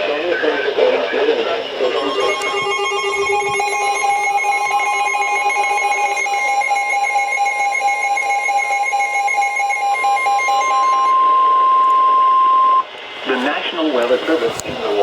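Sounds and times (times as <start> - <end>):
steady electronic tone: 1.9 - 11.2
weather radio alarm: 1.9 - 11.6.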